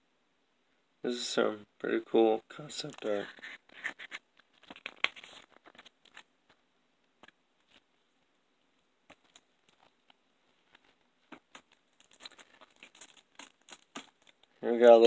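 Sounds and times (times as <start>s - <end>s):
paper and card rustling: 2.5s - 6.6s, 7.2s - 8.0s, 9.0s - 15.0s.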